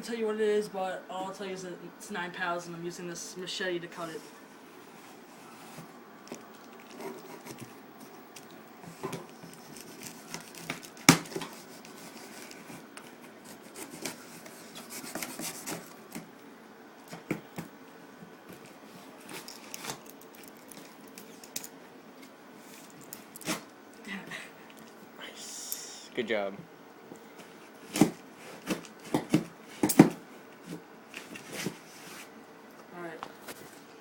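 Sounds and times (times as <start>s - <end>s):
blade scraping cardboard box: 13.4s - 15.9s.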